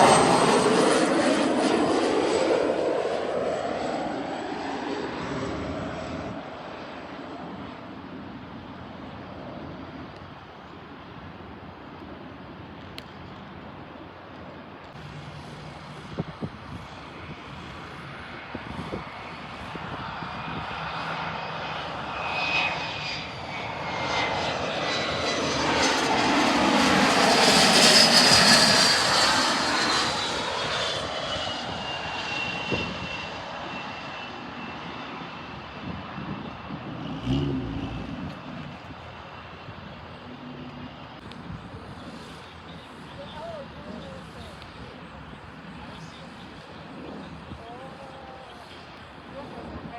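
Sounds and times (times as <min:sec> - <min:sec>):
airplane flying past: 0:00.0 - 0:11.2, 0:13.9 - 0:49.9
high engine whine: 0:13.1 - 0:49.8.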